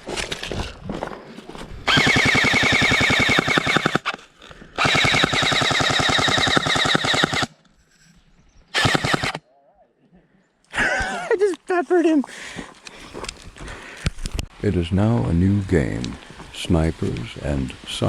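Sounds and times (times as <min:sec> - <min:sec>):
airsoft gun full-auto bursts: 0:01.9 - 0:04.2, 0:04.8 - 0:07.6, 0:08.8 - 0:09.4.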